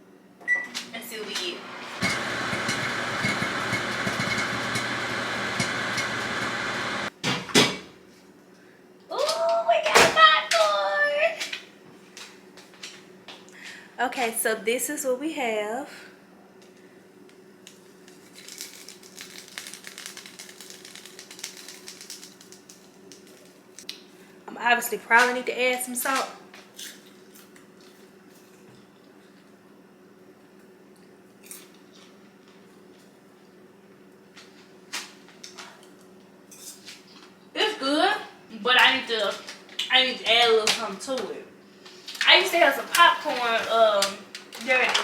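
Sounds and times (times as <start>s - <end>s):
microwave oven humming: 0.0s - 8.0s
popcorn popping: 1.9s - 7.1s, 18.1s - 24.0s.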